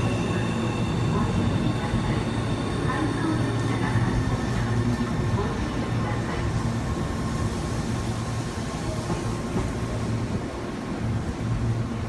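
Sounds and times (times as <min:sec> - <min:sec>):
electric train running: 0:00.0 - 0:06.9.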